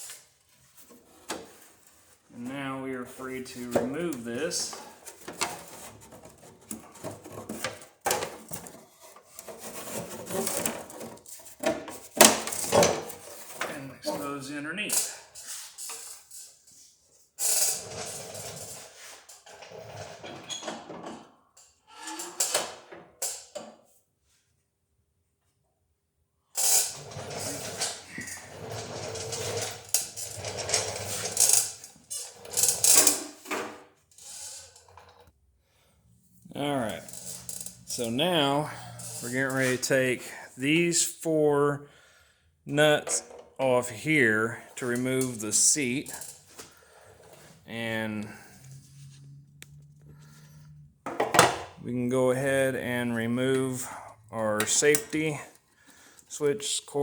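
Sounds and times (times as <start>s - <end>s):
scraping rattles: 3.4s - 14.4s, 26.8s - 33.5s, 36.3s - 40.1s
metal tools clattering: 3.6s - 16.5s, 26.9s - 33.5s, 36.9s - 39.9s, 53.4s - 55.6s.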